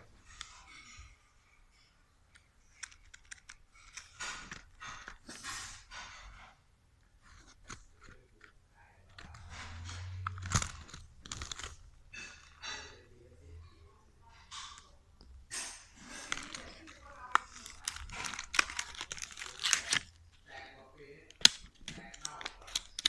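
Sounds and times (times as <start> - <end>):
packaging crinkling and tearing: 9.1 - 12.8, 16.0 - 20.5, 21.3 - 23.0.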